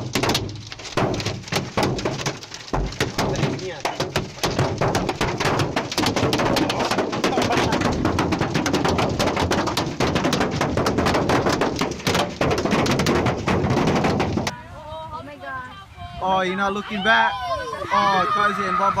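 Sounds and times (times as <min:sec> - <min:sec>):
hailstones pelting hard surface: 0:00.0 - 0:14.5.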